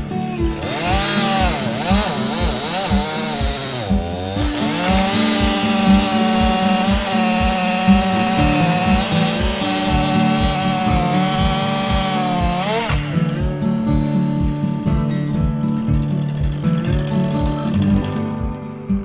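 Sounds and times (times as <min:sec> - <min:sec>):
chainsaw cutting wood: 0:00.0 - 0:14.6, 0:15.7 - 0:19.0
background music with steady beat: 0:00.0 - 0:19.0.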